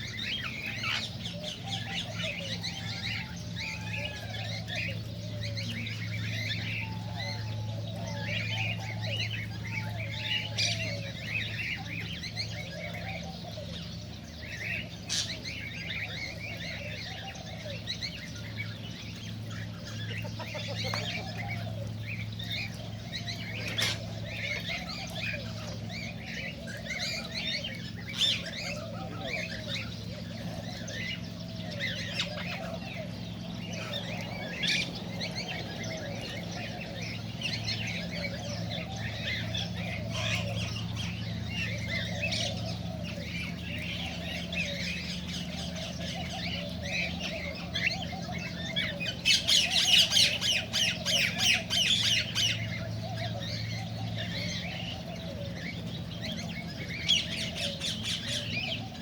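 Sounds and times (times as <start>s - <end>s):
cockatiels chirping and chattering: 0.0s - 59.0s
steady low hum: 0.0s - 59.0s
rapid squawking calls: 14.3s - 59.0s.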